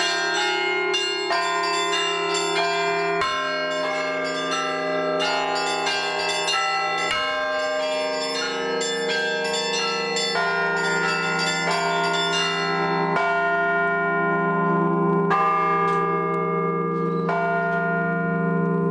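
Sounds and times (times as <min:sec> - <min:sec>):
small bells striking quickly: 0:00.0 - 0:13.1
heavy bells ringing: 0:00.0 - 0:18.9.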